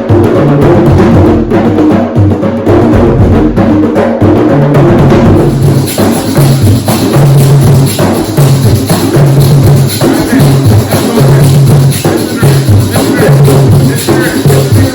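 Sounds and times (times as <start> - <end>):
drums: 0.0 - 14.9
high jingling: 5.5 - 14.9.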